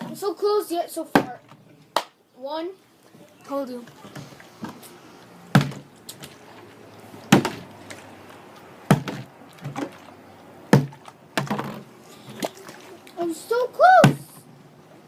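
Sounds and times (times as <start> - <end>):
plastic bottle thudding on hard surface: 5.6 - 5.9, 7.3 - 7.7, 8.9 - 9.9, 10.7 - 11.9.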